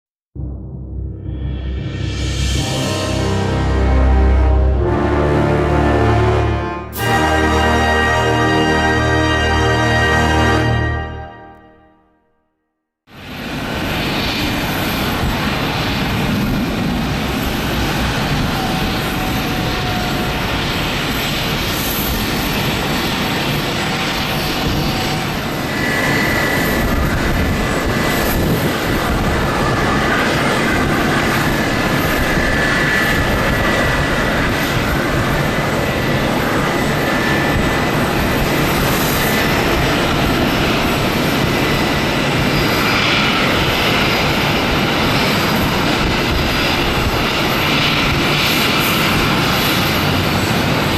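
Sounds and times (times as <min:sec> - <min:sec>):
high steady whine: 0:00.4 - 0:05.1
jet engines roaring: 0:00.8 - 0:11.6, 0:13.1 - 0:50.9.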